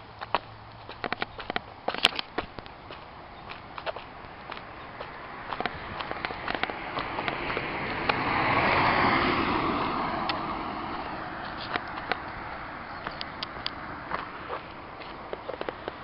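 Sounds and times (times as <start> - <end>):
sharp clicks: 0.8 - 7.4.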